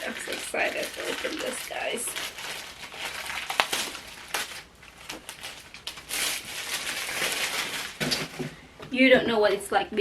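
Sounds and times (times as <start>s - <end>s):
cardboard packaging rustling: 0.0s - 8.6s.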